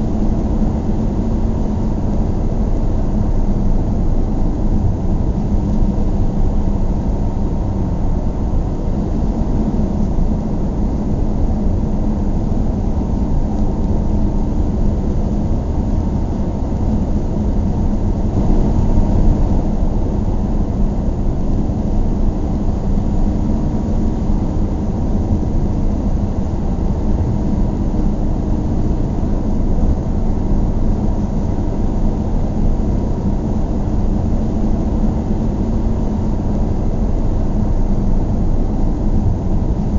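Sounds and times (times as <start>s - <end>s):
car engine rumble: 0.0s - 31.9s.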